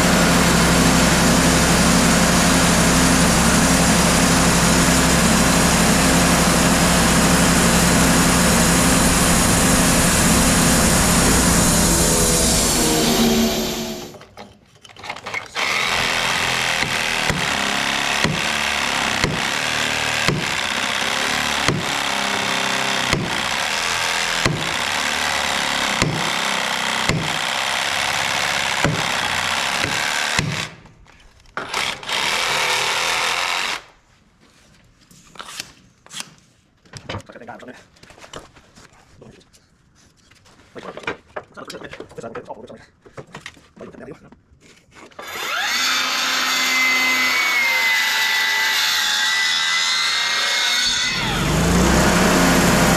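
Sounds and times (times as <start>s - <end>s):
power saw cutting wood: 0.0s - 14.3s, 15.6s - 30.9s, 31.6s - 33.9s, 45.1s - 52.9s.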